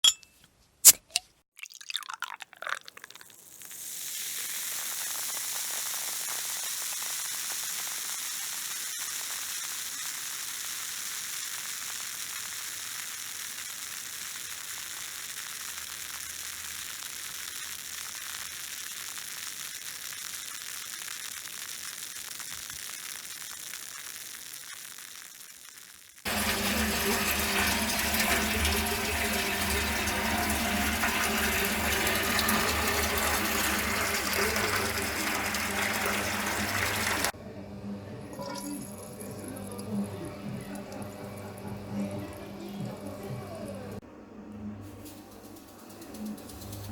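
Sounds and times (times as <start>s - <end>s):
beer fizzing in a glass: 1.5s - 16.2s, 17.1s - 37.4s, 38.3s - 43.8s
humming machine-like sound: 26.3s - 46.9s.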